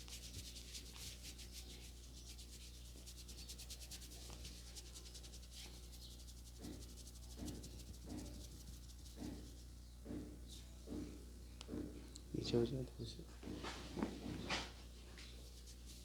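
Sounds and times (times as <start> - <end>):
hands rubbing hair and scalp: 0.0 - 9.8, 15.4 - 16.0
steady low hum: 0.0 - 16.0.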